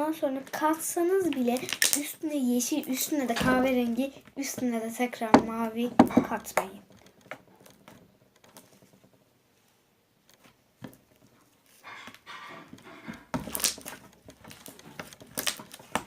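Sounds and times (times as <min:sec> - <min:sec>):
slime squelching and popping: 0:01.3 - 0:02.2, 0:13.2 - 0:16.0.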